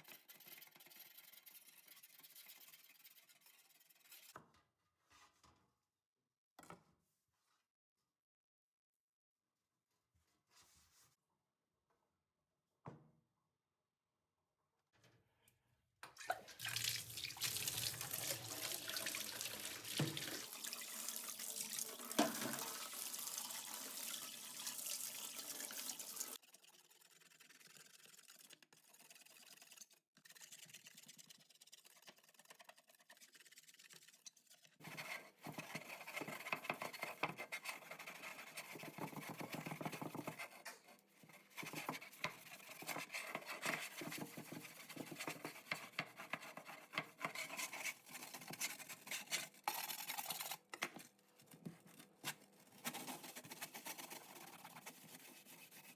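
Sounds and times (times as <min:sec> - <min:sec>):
tap running into sink: 0:16.0 - 0:26.4
scraping and handling sounds: 0:34.2 - 0:55.9.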